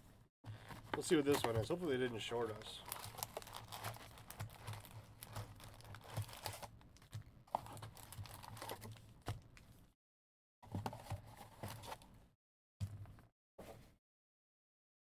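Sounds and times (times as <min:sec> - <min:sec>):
trading cards rustling: 0:00.5 - 0:09.7.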